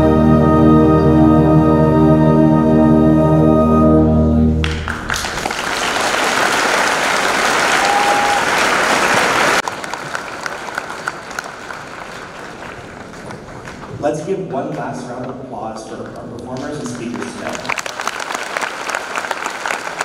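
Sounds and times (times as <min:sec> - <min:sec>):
audience applauding: 0:04.6 - 0:14.0, 0:16.6 - 0:20.0
crowd noise: 0:05.2 - 0:20.0.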